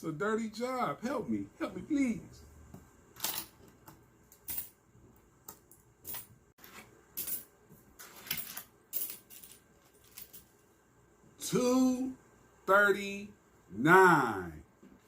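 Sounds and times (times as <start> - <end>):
coins clinking: 3.2 - 3.7, 4.3 - 4.8, 5.5 - 10.6.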